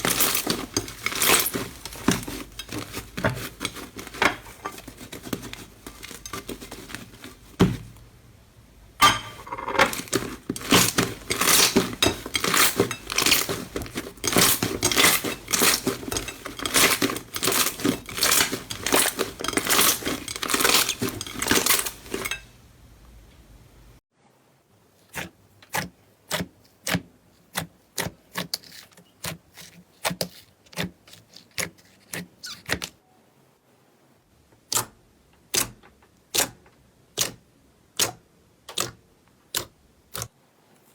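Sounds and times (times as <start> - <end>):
slime crackling and popping: 10.0 - 22.0.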